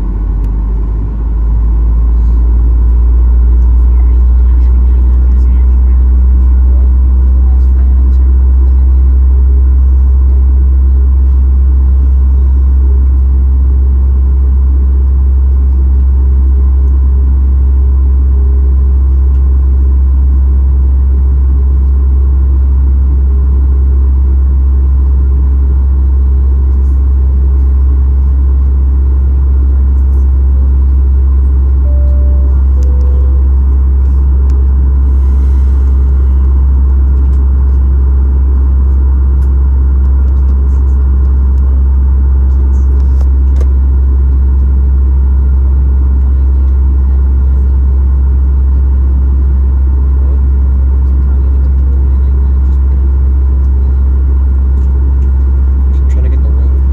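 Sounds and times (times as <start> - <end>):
jet engine cabin rumble: 0.0 - 56.9.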